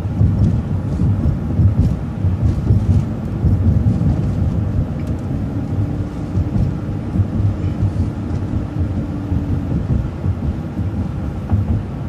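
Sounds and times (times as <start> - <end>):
bus engine and road rumble: 0.0 - 12.0.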